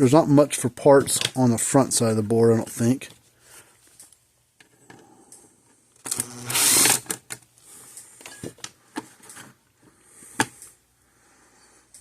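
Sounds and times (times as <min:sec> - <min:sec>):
power screwdriver whirring: 0:06.1 - 0:07.1
faint handling noise: 0:07.2 - 0:10.8.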